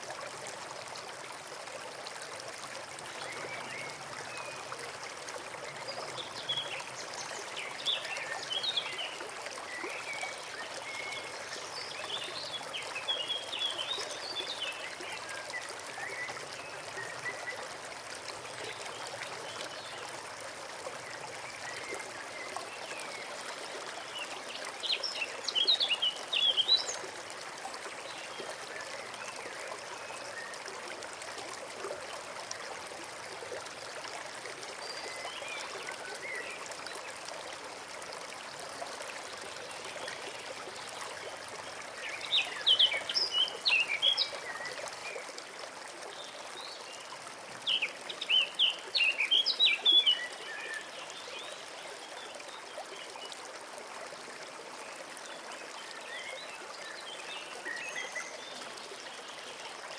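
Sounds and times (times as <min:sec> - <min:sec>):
forest stream trickling: 0:00.0 - 0:59.9.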